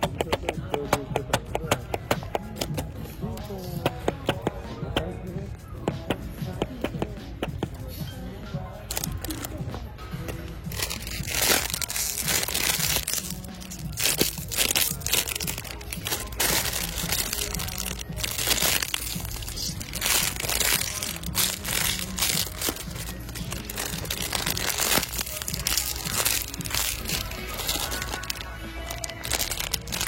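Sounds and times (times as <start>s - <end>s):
faint background music: 0.0s - 30.0s
plastic packaging crackling: 8.9s - 9.6s, 10.7s - 30.0s.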